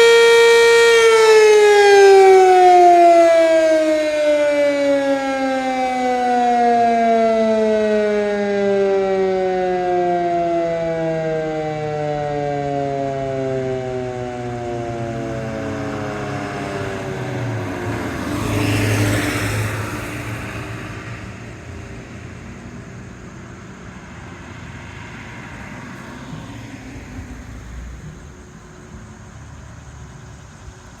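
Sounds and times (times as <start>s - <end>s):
tornado siren winding down: 0.0s - 22.6s
vehicle passing: 0.0s - 31.0s.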